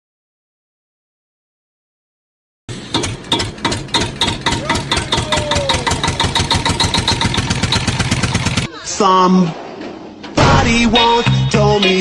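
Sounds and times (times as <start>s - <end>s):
small engine knocking: 2.7s - 8.7s.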